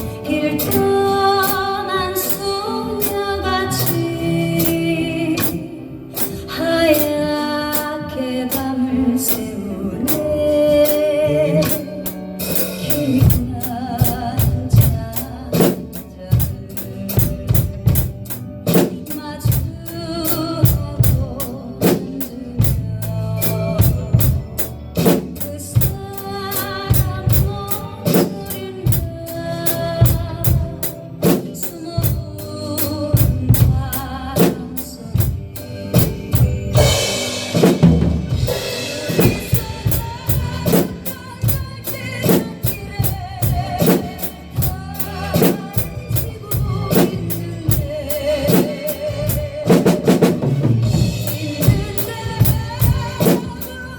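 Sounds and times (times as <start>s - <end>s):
recorded ballad backing band: 0.0s - 53.9s
bass drum and snare beat: 11.8s - 29.1s, 29.7s - 53.9s
cymbal crash: 36.8s - 39.8s.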